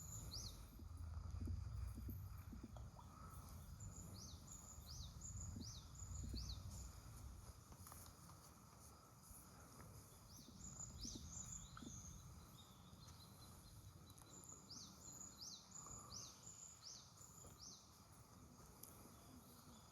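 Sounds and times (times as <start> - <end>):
low background rumble: 0.0 - 7.7.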